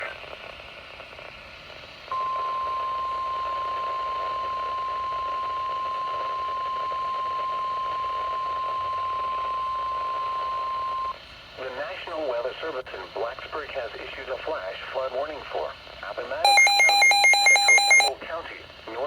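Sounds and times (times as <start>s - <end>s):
faint radio hiss: 0.0s - 19.0s
steady alarm beep: 16.5s - 18.1s.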